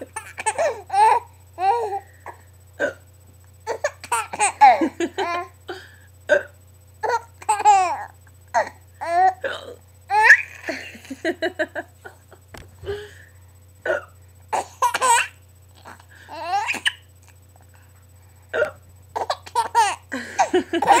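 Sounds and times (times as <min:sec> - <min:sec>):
baby laughing: 0:03.7 - 0:05.5, 0:07.0 - 0:09.4, 0:10.1 - 0:11.1, 0:14.6 - 0:17.0, 0:19.2 - 0:21.0.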